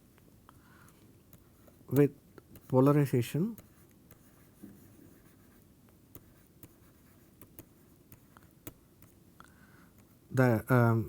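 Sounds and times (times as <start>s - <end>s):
low background hiss: 0.0s - 11.0s
pen scratching on paper: 3.5s - 9.2s.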